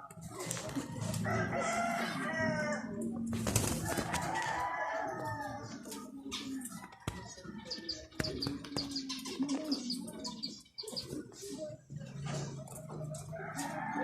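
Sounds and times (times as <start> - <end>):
rooster crowing: 1.0 - 3.0, 4.0 - 5.7.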